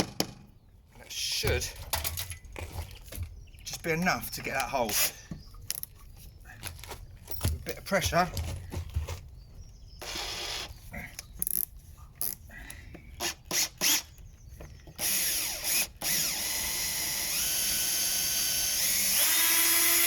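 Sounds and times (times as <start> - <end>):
power drill removing screw: 10.0 - 10.7, 15.0 - 20.0.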